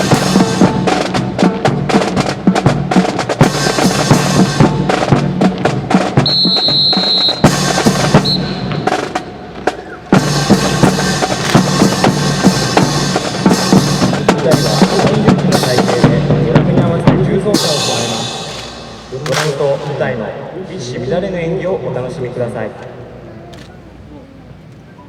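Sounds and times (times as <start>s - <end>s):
bass drum beats: 0.0s - 20.1s
snare drum cadence: 5.1s - 13.0s, 17.6s - 20.2s.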